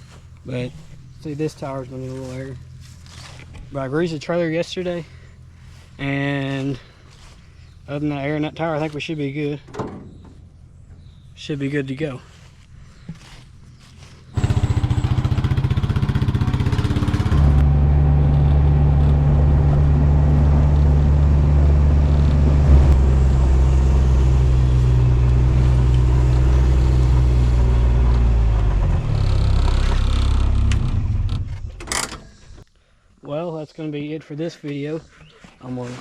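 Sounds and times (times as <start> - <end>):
truck engine running: 13.6 - 31.4.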